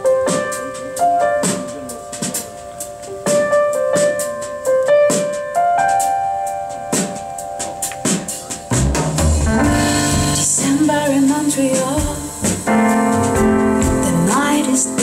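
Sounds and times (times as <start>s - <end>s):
piano chords ringing: 0.0s - 15.0s
person singing: 10.2s - 15.0s.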